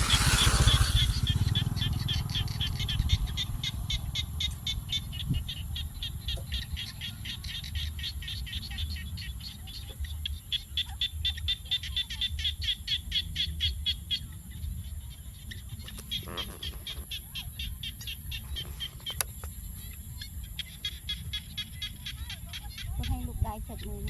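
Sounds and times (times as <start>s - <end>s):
low steady rumble: 0.0s - 24.0s
sharp click: 18.8s - 19.6s.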